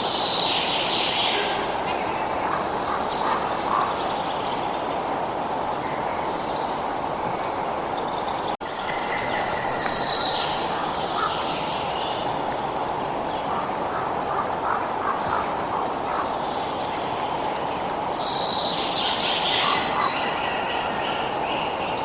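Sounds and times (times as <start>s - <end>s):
birds calling: 1.0s - 6.9s, 7.6s - 17.5s.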